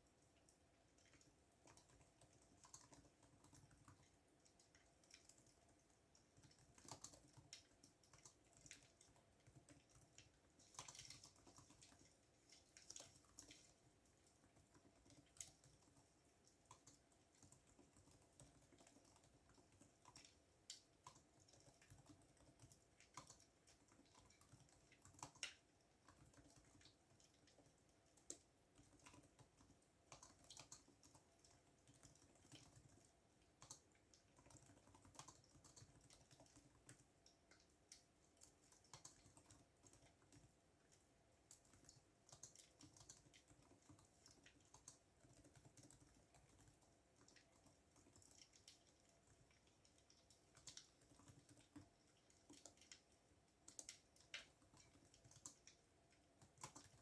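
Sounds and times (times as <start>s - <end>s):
faint steady hum: 0.0s - 57.0s
keyboard typing clicks: 6.4s - 12.0s.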